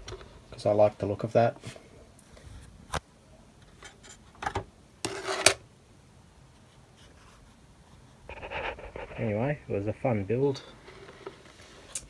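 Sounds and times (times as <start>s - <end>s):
short rubbing scrape: 5.0s - 5.6s.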